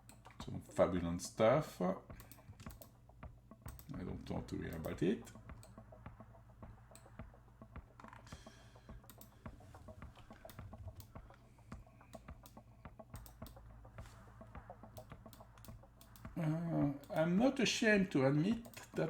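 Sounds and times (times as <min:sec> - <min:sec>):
low steady hum: 0:00.0 - 0:19.0
computer keyboard typing: 0:02.1 - 0:02.9, 0:03.6 - 0:05.8, 0:06.9 - 0:17.3.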